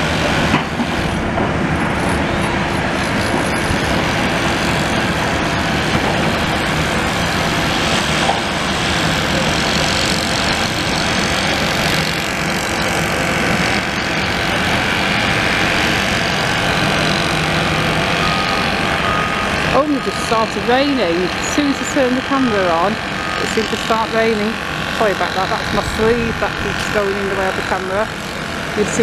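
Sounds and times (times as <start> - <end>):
engine noise: 0.0 - 29.0
wind on microphone: 25.6 - 27.2.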